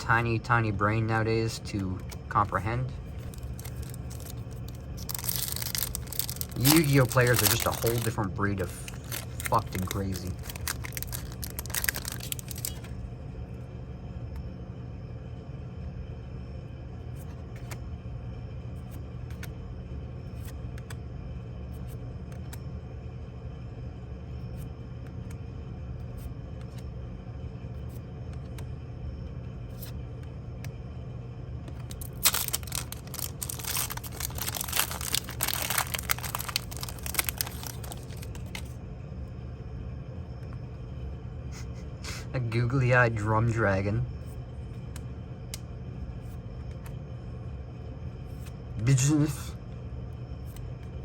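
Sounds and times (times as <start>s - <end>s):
low hum: 0.0s - 51.0s
foil pack tearing and crinkling: 3.2s - 12.9s, 31.9s - 38.7s.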